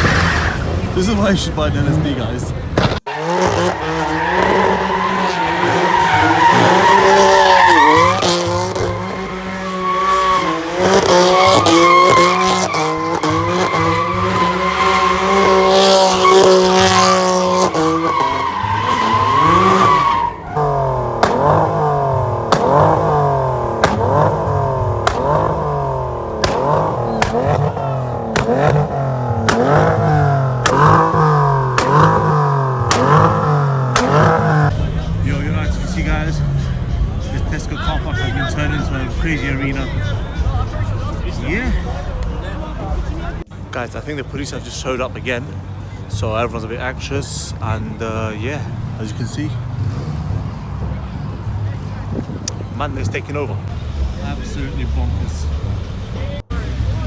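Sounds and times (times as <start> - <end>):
car engine revving: 0.0 - 57.0
tyres squealing: 1.8 - 34.7
sharp exhaust pops: 2.8 - 4.9, 20.6 - 34.7.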